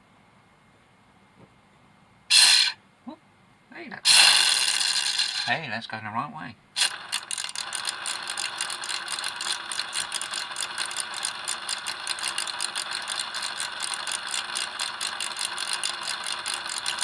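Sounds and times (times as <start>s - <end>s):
motor and fan whirring: 4.0s - 5.8s, 6.7s - 17.0s
fast even rattle: 4.1s - 5.6s, 6.8s - 17.0s.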